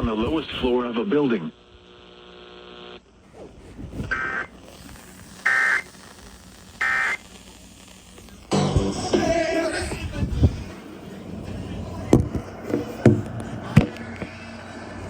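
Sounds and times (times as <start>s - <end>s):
steady buzz: 0.0s - 15.0s
electronic data burst screeches: 3.8s - 12.6s.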